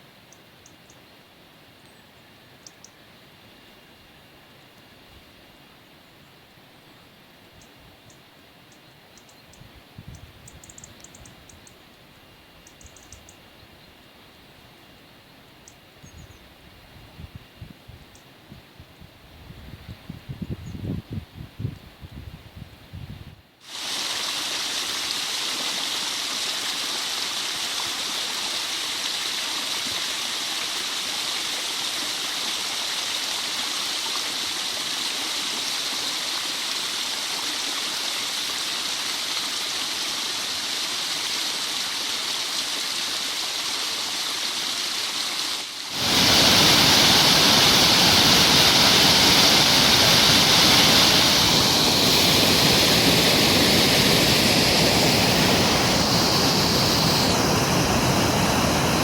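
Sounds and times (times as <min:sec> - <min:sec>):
mountain stream rushing: 0:23.6 - 0:59.0.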